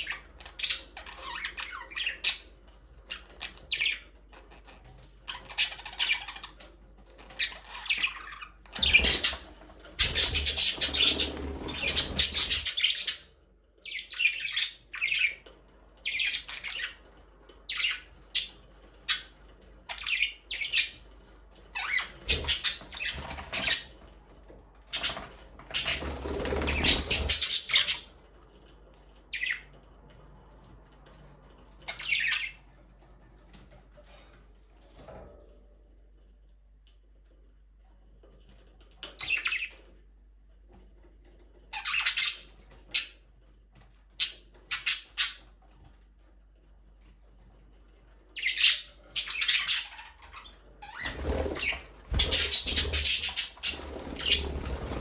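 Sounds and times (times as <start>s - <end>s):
budgerigars chirping and squawking: 0.0s - 24.0s, 24.9s - 28.2s, 29.3s - 29.8s, 31.8s - 32.7s, 39.0s - 39.9s, 41.6s - 43.3s, 44.2s - 45.6s, 48.3s - 55.0s
wings fluttering: 8.7s - 13.2s, 21.8s - 23.9s, 24.9s - 28.0s, 50.8s - 55.0s.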